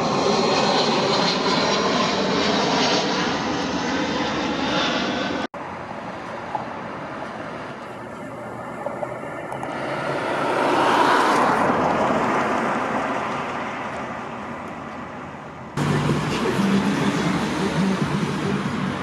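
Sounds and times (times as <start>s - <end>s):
passing vehicle: 5.6s - 19.0s.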